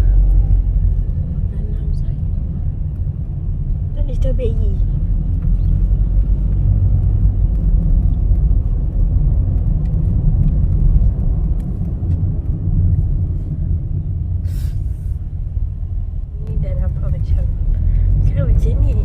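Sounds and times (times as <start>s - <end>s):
car road rumble from inside: 0.0s - 19.0s
short hiss: 14.4s - 15.2s.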